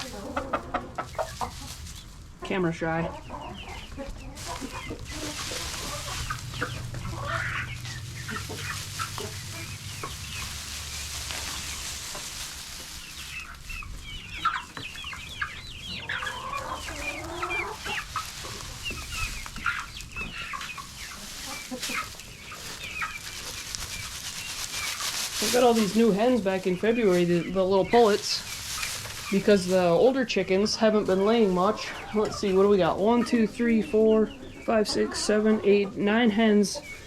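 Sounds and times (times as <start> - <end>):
hens clucking and calling: 0.0 - 37.0.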